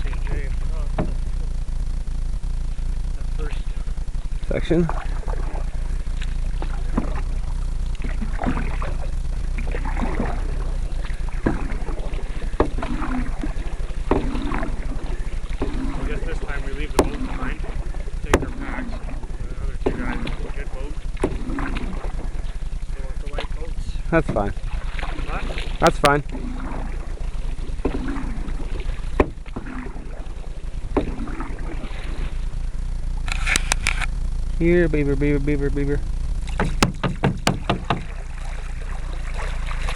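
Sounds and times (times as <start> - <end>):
paddle splashing water: 0.0 - 34.1, 36.3 - 39.9
low rumble: 0.0 - 39.9
paddle knocks: 0.9 - 1.2, 6.2 - 20.5, 21.2 - 22.6, 24.2 - 32.4, 36.4 - 39.9
sharp knocks: 0.9 - 1.2, 14.0 - 14.6, 16.9 - 17.2, 18.3 - 18.6, 21.2 - 21.9, 29.1 - 29.7, 36.5 - 38.2.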